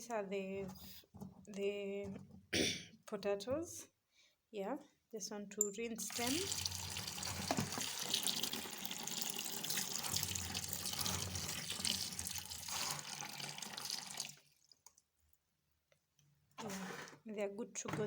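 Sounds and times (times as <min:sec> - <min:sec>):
water running from tap: 0:06.0 - 0:14.8.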